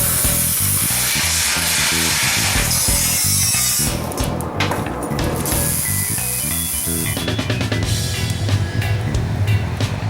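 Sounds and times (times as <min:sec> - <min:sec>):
music with steady beat: 0:00.0 - 0:01.0, 0:02.0 - 0:10.0.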